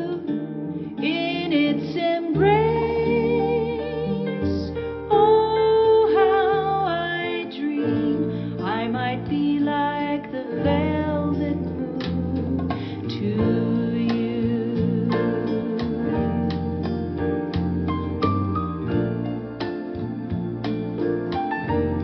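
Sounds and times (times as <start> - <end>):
person singing: 0.0 - 17.5
soft song over loudspeakers: 0.0 - 22.0.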